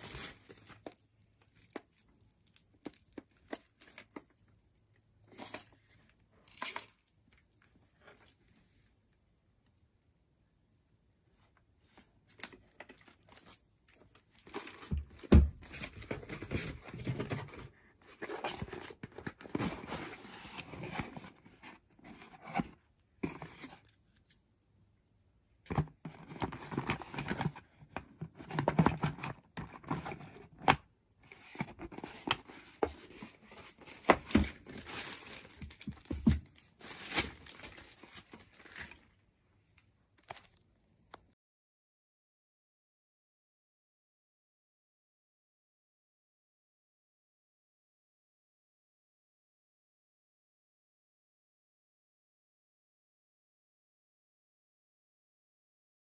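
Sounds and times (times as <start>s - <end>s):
packaging crinkling and tearing: 0.0s - 4.5s, 12.0s - 21.3s, 31.5s - 39.0s, 40.2s - 40.8s.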